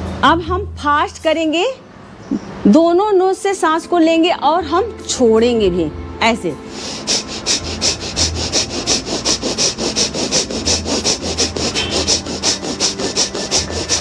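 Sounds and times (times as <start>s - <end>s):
fast forceful nasal breathing: 6.7s - 14.0s.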